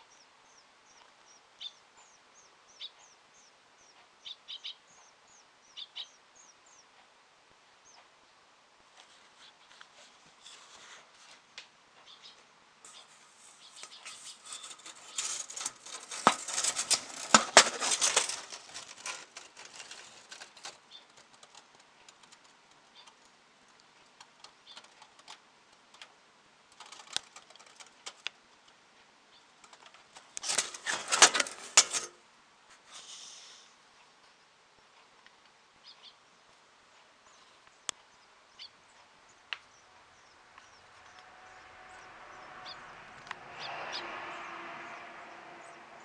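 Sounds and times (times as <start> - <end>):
bird scratching and tapping on fan: 12.9 - 28.8, 29.6 - 32.2.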